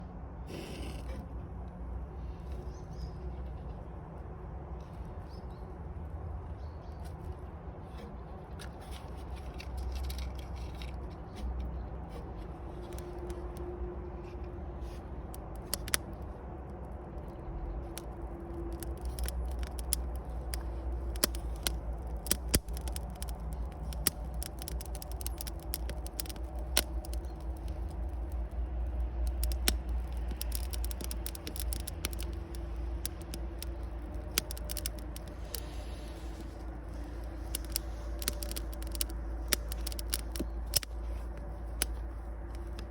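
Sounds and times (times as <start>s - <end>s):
low rumble of fire: 0.0s - 42.9s
bonfire crackling and popping: 15.2s - 42.9s.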